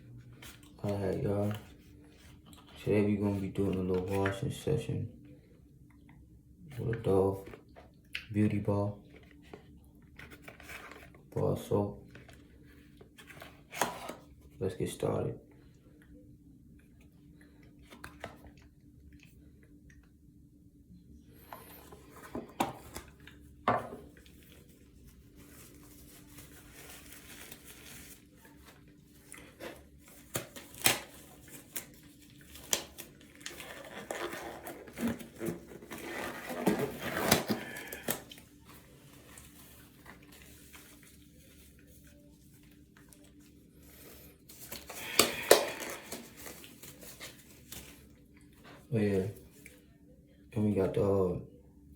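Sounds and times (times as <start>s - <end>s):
rustling and crinkling: 9.0s - 11.3s, 21.4s - 49.8s.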